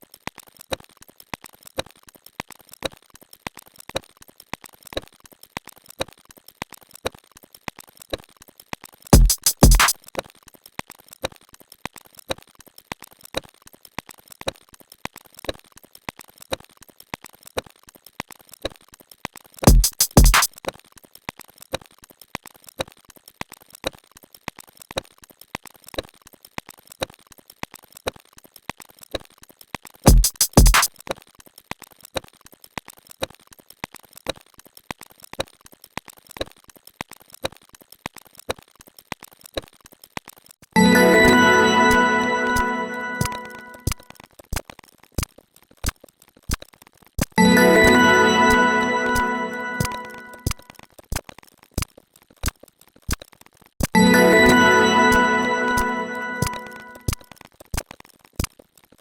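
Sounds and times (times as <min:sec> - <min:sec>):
kick drum hits: 0:09.2 - 0:09.8, 0:19.7 - 0:20.4, 0:30.1 - 0:30.8.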